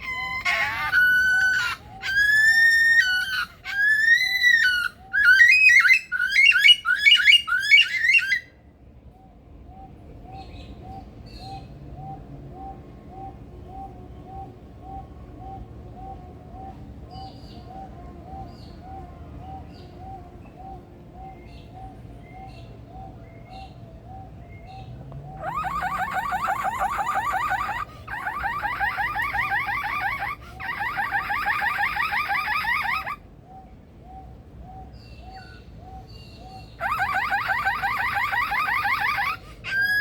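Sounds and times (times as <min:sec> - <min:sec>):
bird mimicking car alarm: 0:25.4 - 0:33.2, 0:36.8 - 0:40.0.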